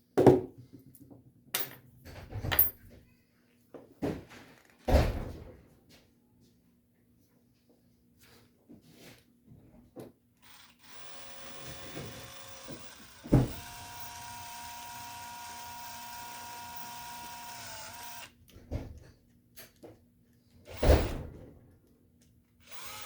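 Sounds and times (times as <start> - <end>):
power drill motor whine: 10.4 - 18.4, 22.6 - 23.0.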